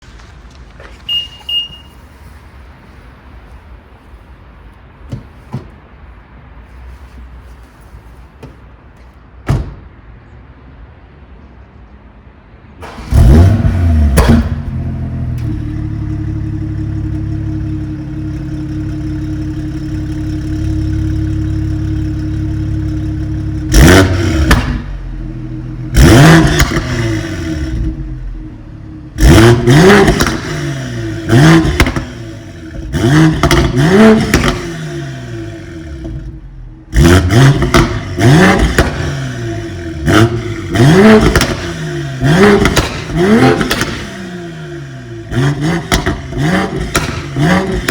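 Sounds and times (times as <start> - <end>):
car engine starting and revving: 12.8 - 47.9.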